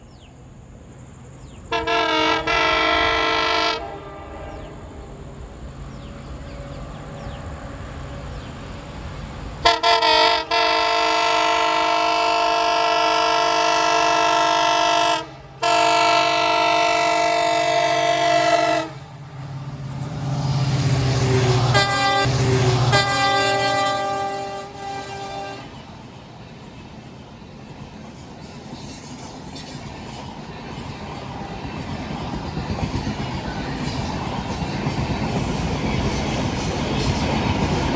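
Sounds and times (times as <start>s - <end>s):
locomotive passing rumble: 0.0s - 37.9s
locomotive horn blasts: 1.7s - 5.2s, 9.6s - 19.1s, 21.3s - 25.8s.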